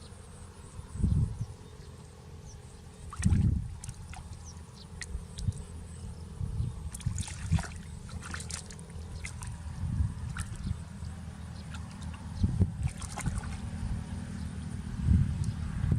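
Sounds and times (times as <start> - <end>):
water sloshing and splashing: 3.0 - 6.0, 6.8 - 14.1.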